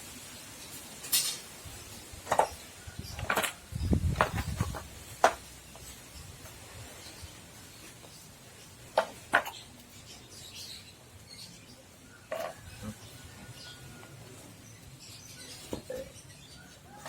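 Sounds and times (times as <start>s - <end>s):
objects knocking and clicking: 2.2s - 5.9s, 8.9s - 9.6s, 12.3s - 12.7s.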